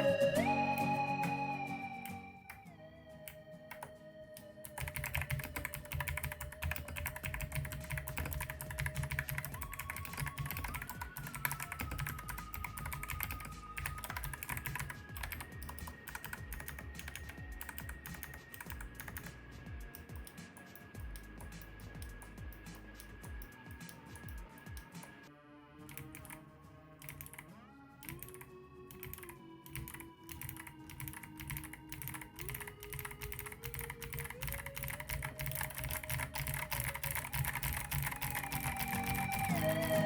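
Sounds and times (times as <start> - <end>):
quiet background music: 0.0 - 40.0
clicky mechanical keyboard typing: 3.3 - 4.0, 4.6 - 25.1, 25.9 - 26.4, 27.0 - 27.4, 28.0 - 40.0.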